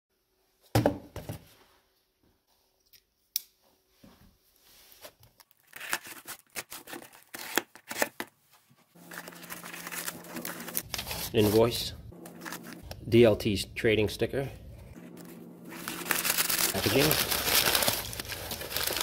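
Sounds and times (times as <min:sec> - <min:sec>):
cardboard rustling and tearing: 0:05.5 - 0:08.2, 0:09.0 - 0:12.8, 0:15.2 - 0:19.0.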